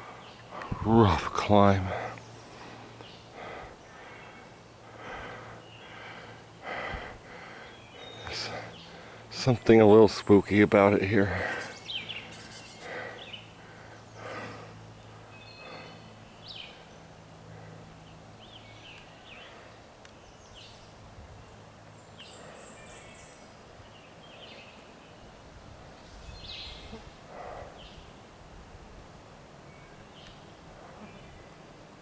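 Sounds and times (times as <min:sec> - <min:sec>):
bird chirps and calls: 0:10.1 - 0:13.5.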